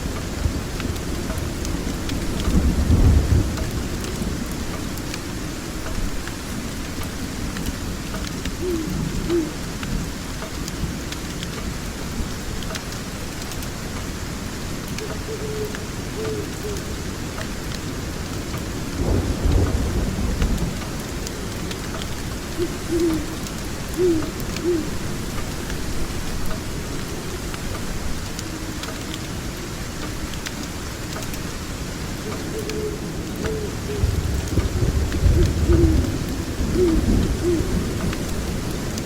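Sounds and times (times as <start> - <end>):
steady rain: 0.0 - 39.0
thunder rolling: 19.0 - 21.9, 34.0 - 38.7.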